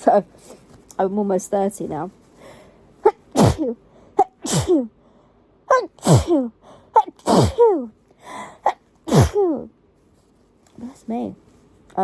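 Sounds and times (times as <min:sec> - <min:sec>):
person sneezing: 0:03.0 - 0:04.9, 0:05.7 - 0:07.9, 0:08.6 - 0:09.7.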